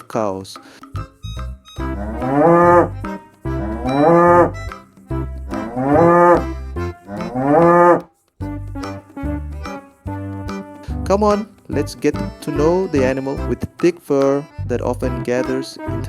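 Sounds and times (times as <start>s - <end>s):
cow mooing: 1.8s - 4.7s, 5.5s - 8.0s.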